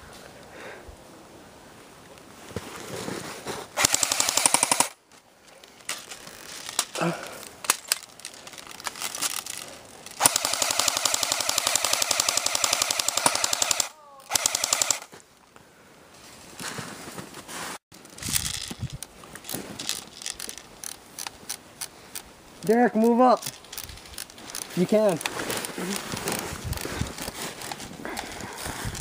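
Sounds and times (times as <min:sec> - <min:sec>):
airsoft gun firing bursts: 0:03.8 - 0:05.0, 0:10.2 - 0:15.1.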